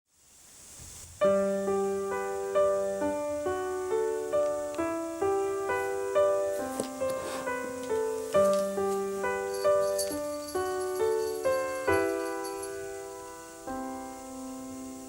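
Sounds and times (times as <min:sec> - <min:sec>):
faint hiss: 0:00.1 - 0:15.0
gentle keyboard melody: 0:01.3 - 0:15.0.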